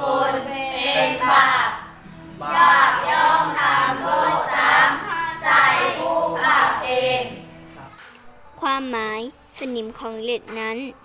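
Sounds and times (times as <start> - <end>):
young women chanting: 0.0 - 7.4.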